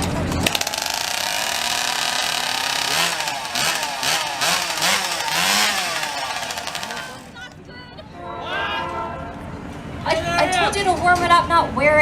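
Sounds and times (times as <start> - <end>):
chainsaw revving up and down: 0.4 - 7.4.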